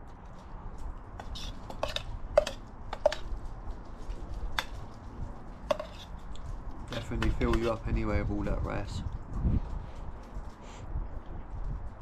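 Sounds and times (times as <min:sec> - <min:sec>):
metal utensil clinking on metal can: 0:01.2 - 0:03.3, 0:05.7 - 0:06.1.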